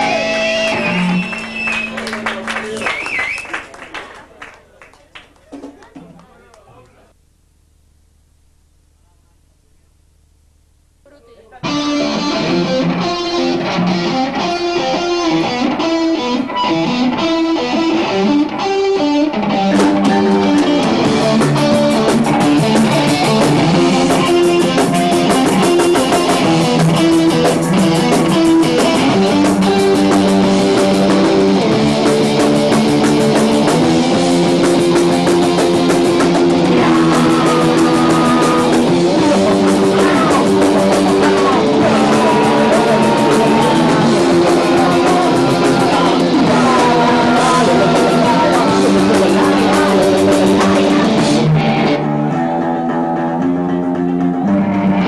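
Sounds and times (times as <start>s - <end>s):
electric guitar: 0.0s - 3.4s, 11.1s - 55.0s
drums and cymbals: 19.7s - 51.6s.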